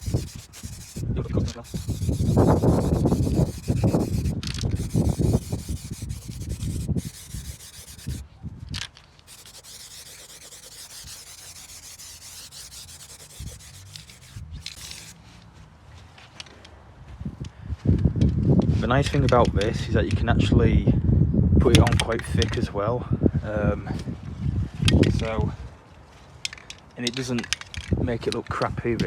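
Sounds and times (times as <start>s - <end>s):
steady spray hiss: 0.0s - 1.0s
rough rubbing strokes: 0.0s - 8.2s, 9.3s - 15.2s.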